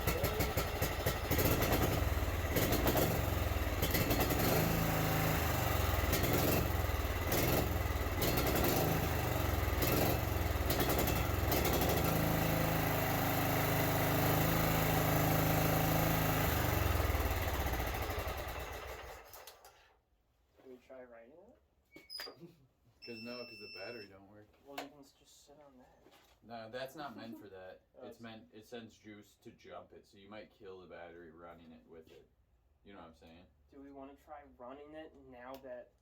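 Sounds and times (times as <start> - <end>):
tractor engine idling: 0.0 - 19.4.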